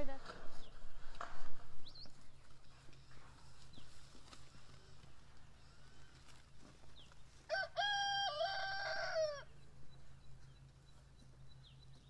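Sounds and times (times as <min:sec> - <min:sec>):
rooster crowing: 0:07.5 - 0:09.5.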